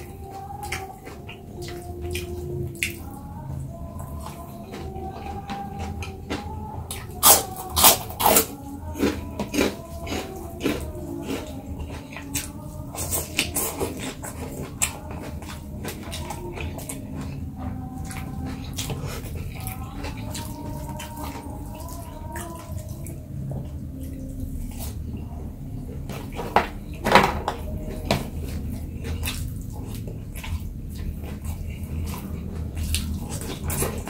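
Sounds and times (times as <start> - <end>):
person chewing: 0.0 - 27.0, 27.6 - 34.0.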